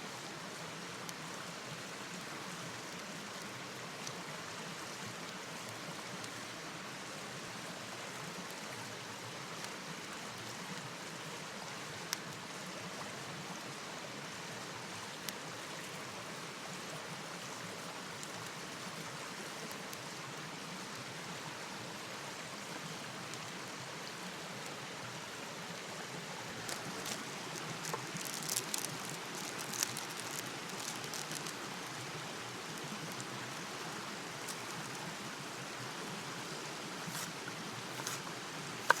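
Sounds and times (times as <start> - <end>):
rain hissing: 26.2 - 39.0.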